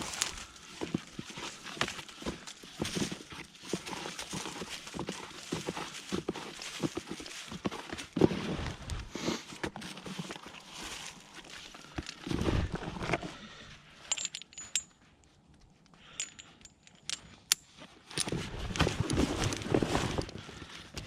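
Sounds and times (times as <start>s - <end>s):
rustling and scuffing: 0.0s - 13.6s, 17.7s - 20.9s
metallic clinks and jingles: 14.0s - 15.1s, 16.1s - 18.3s.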